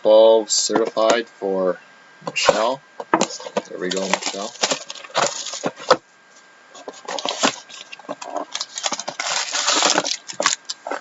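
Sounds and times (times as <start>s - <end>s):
packaging crinkling and rustling: 2.4s - 6.0s, 6.8s - 11.0s.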